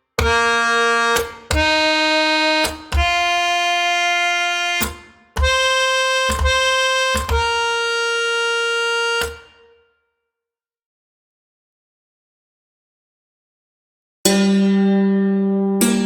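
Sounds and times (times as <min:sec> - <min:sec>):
harmonium held notes: 0:00.2 - 0:09.8.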